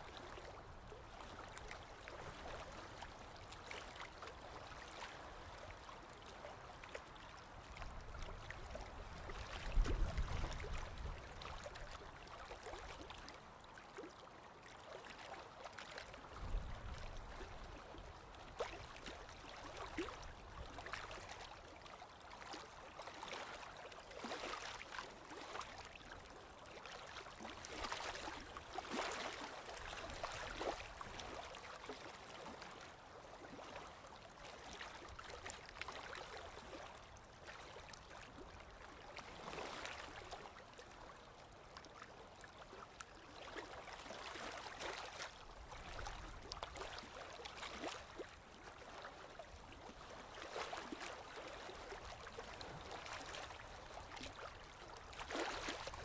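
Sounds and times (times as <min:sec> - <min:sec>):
flowing water splashing: 0:00.0 - 0:56.0.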